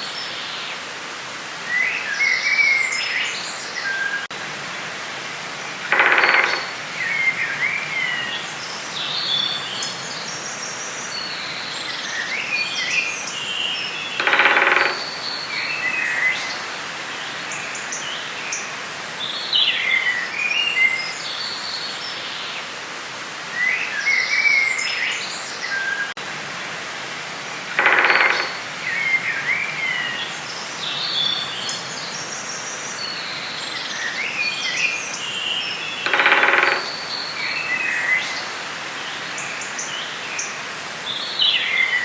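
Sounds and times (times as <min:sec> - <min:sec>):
background hiss: 0:00.0 - 0:42.0
songbirds chirping and trilling: 0:01.7 - 0:22.7, 0:27.4 - 0:42.0
buzzy bird call: 0:05.8 - 0:06.8, 0:14.2 - 0:16.4, 0:27.7 - 0:30.2, 0:36.0 - 0:38.4.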